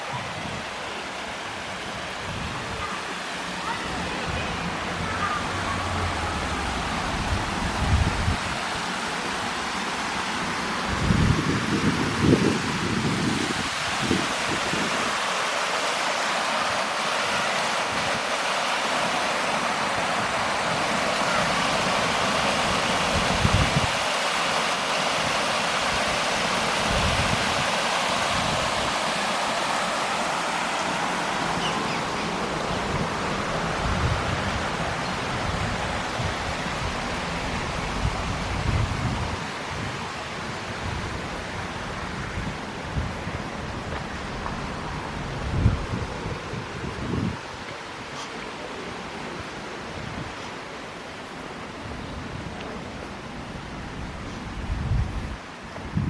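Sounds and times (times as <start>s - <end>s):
running water rushing: 0.0s - 56.0s
wind buffeting microphone: 4.1s - 8.7s, 22.6s - 24.0s, 32.5s - 47.6s, 53.6s - 56.0s.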